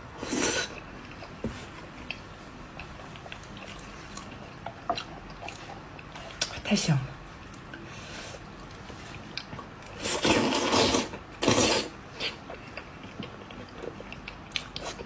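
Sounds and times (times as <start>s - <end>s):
wet chewing clicks: 2.0s - 6.6s, 12.2s - 15.0s.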